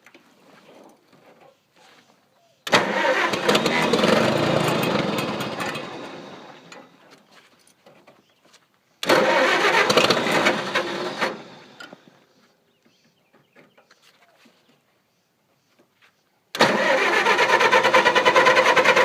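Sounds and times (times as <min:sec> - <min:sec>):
engine cranking: 0:02.7 - 0:07.0, 0:09.0 - 0:12.1, 0:16.6 - 0:19.0.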